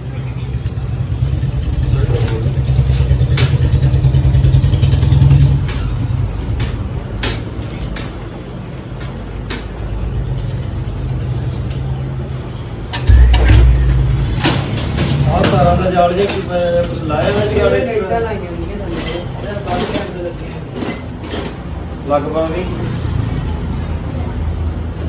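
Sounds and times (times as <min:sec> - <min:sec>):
heavier engine rumble: 0:10.0 - 0:16.2
vehicle engine rumbling: 0:10.0 - 0:16.3.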